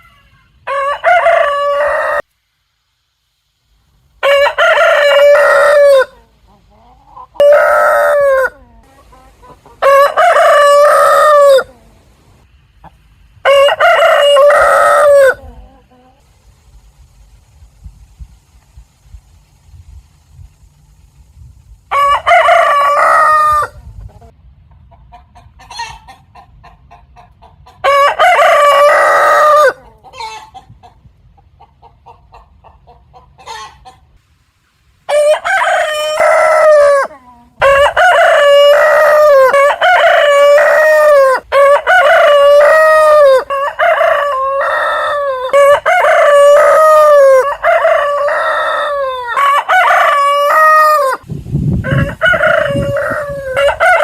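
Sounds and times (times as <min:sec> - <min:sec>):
roosters crowing: 0:00.0 - 0:02.3, 0:04.2 - 0:12.2, 0:13.4 - 0:16.2, 0:21.9 - 0:24.3, 0:27.8 - 0:30.6, 0:35.1 - 0:54.0.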